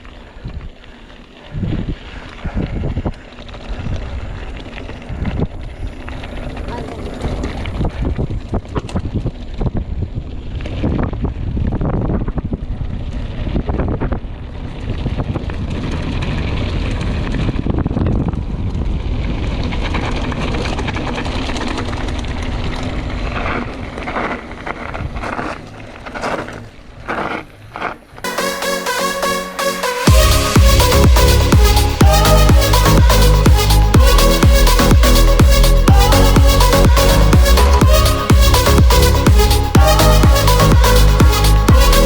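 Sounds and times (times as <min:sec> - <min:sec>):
wind noise on microphone: 0:00.0 - 0:26.6
bike tyre noise: 0:00.0 - 0:28.3, 0:30.1 - 0:42.0.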